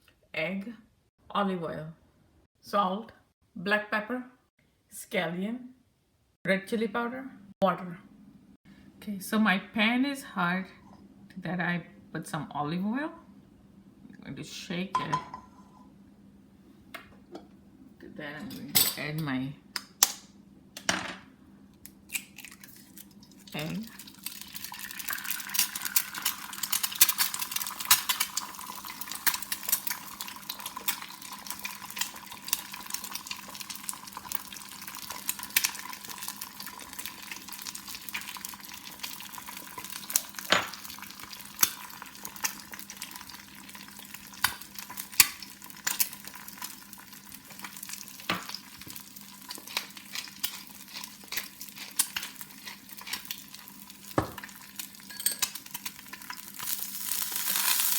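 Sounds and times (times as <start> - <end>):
egg sizzling in oil: 22.3 - 57.9.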